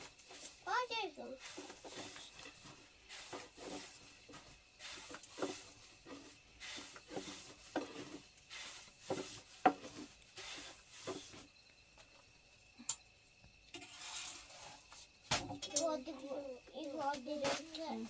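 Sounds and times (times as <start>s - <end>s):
dough rubbing on wooden board: 0.3s - 11.5s.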